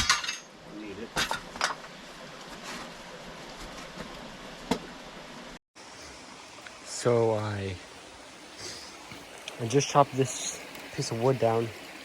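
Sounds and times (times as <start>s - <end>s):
creek water running: 0.5s - 12.0s.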